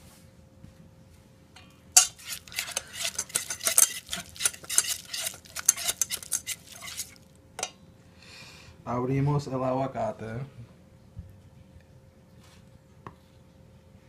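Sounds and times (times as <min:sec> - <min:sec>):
utensil scraping and clinking in bowl: 0:02.0 - 0:07.7.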